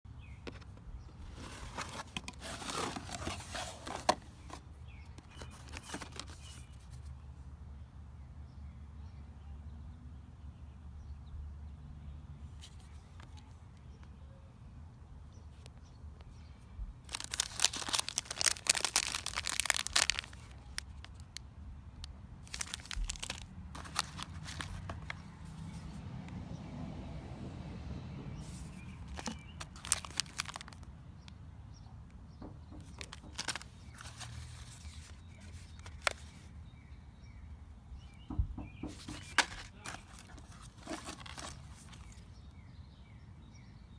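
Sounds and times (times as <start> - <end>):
packaging torn and crinkled: 17.1 - 21.4, 22.5 - 25.2, 28.5 - 30.9, 32.9 - 36.4, 39.0 - 42.2.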